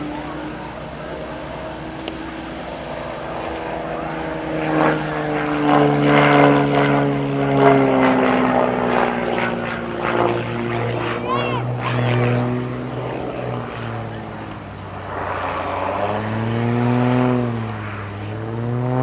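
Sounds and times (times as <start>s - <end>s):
propeller plane passing: 0.0s - 19.0s.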